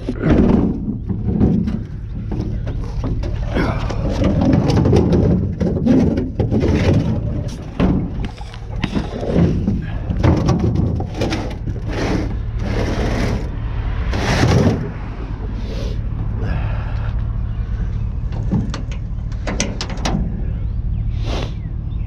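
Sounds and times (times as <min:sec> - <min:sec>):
scrap metal scraping and clanking: 0:00.0 - 0:16.1
low hum: 0:00.0 - 0:22.0.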